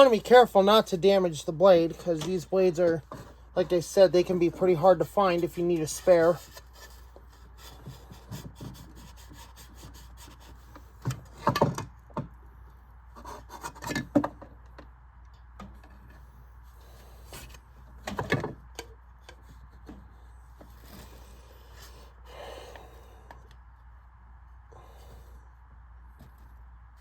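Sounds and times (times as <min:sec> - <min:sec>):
fan blade scraping on shaft: 0:00.0 - 0:11.4.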